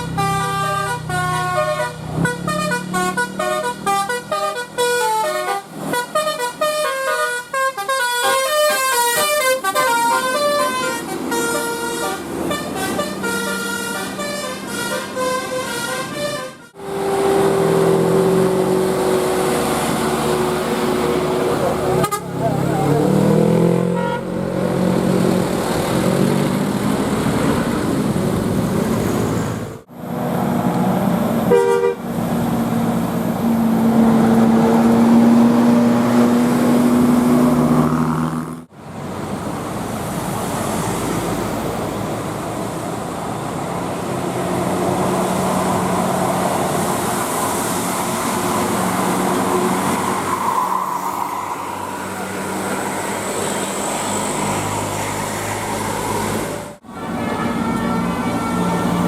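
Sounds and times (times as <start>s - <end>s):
multi-tone musical air horns: 0.0s - 17.4s, 22.0s - 22.4s, 23.9s - 24.3s, 31.5s - 32.0s, 56.9s - 59.0s
engine and traffic noise: 0.0s - 59.0s.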